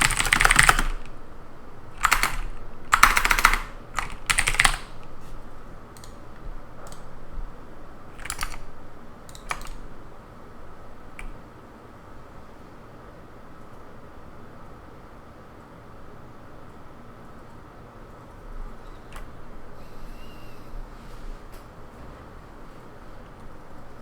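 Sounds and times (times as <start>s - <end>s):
typing on computer keyboard: 0.0s - 1.2s, 2.0s - 5.1s, 5.9s - 7.1s, 8.2s - 9.9s.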